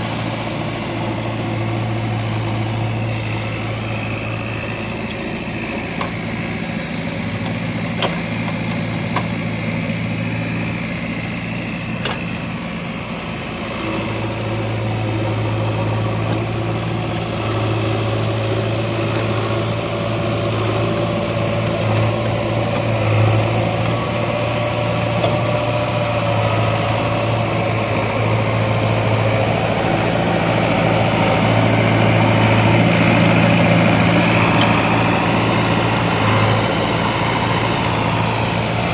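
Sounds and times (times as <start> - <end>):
heavy diesel engine running: 0.0 - 38.9.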